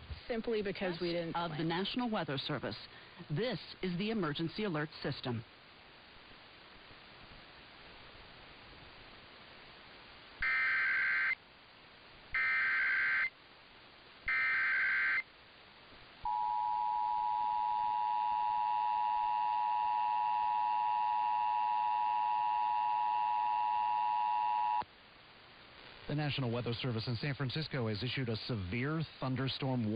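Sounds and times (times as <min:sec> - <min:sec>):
two-tone attention signal: 0:16.3 - 0:24.8.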